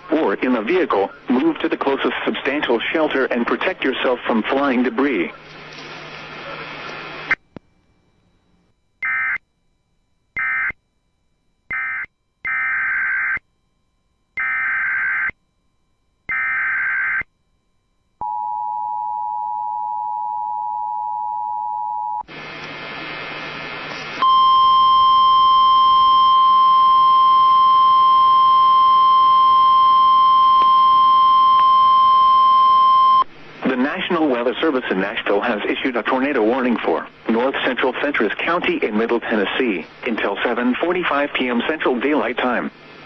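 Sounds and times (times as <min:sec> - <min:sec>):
radio hiss: 0:00.0 - 0:07.4, 0:33.4 - 0:43.0
loud steady alarm tone: 0:09.0 - 0:09.4, 0:10.3 - 0:10.8, 0:11.7 - 0:13.4, 0:14.4 - 0:15.4, 0:16.2 - 0:17.3.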